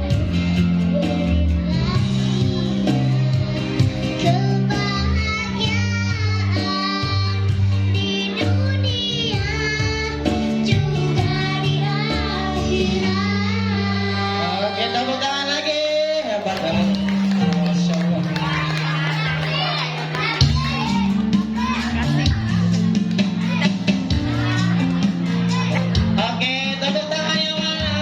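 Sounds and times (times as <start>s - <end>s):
backing music with bass line: 15.0s - 28.0s.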